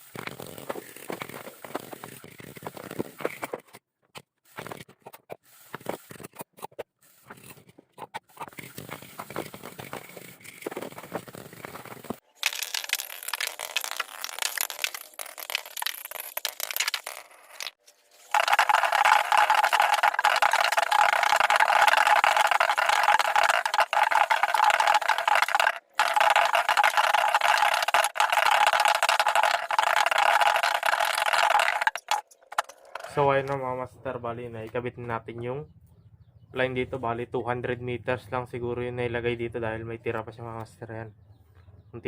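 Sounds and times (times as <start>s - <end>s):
fishing reel rattling whir: 18.4s - 33.2s.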